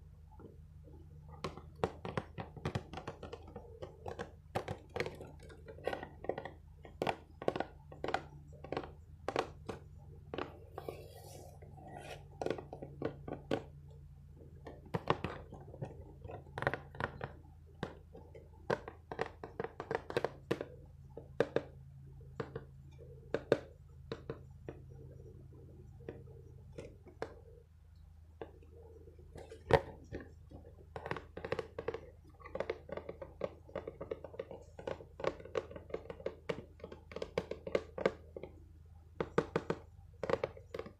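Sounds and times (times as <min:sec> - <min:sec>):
tapping on small objects: 0:01.3 - 0:10.6, 0:29.3 - 0:38.6.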